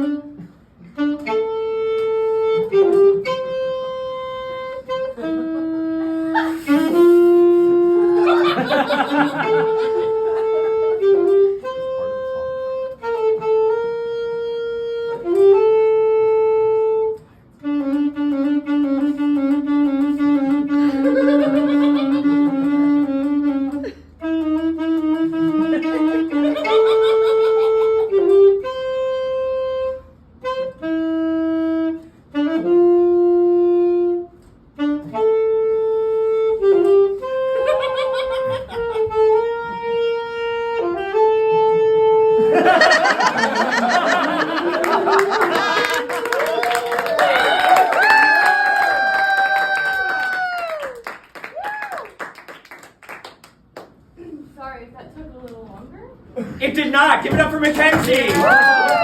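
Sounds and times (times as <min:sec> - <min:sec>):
saxophone slow melody: 0:00.0 - 0:47.1.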